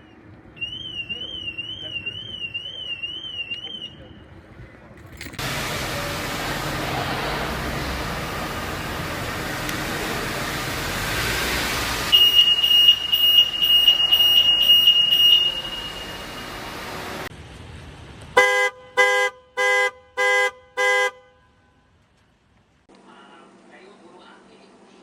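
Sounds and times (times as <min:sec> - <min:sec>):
car horn honking: 0:12.1 - 0:16.8, 0:18.4 - 0:21.6
car alarm siren pulsing: 0:12.1 - 0:17.2.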